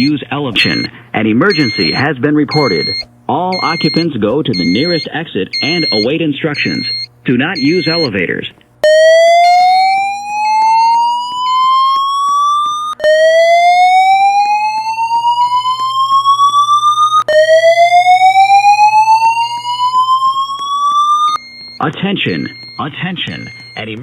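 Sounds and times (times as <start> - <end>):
rising whoop alarm tone: 8.8 - 21.8.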